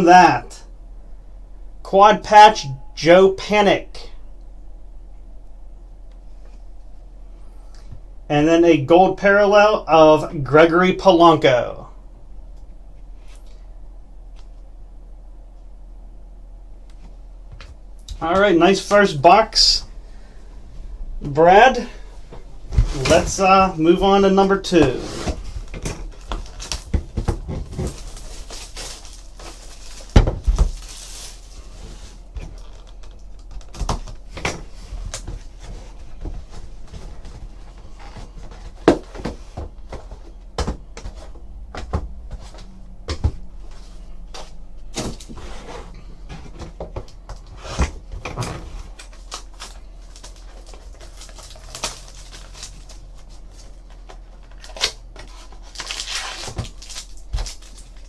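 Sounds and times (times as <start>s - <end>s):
faint low hum: 0.0s - 58.0s
cardboard packaging knocks and rustles: 25.2s - 31.6s, 33.6s - 42.5s.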